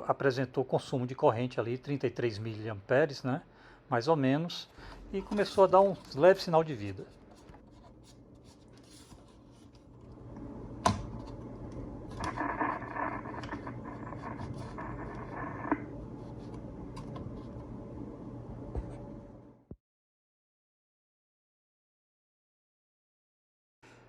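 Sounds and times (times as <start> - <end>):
radio hiss and hum: 11.5 - 19.5
radio crackles and clicks: 11.7 - 17.7
rushing radio noise: 12.1 - 16.0.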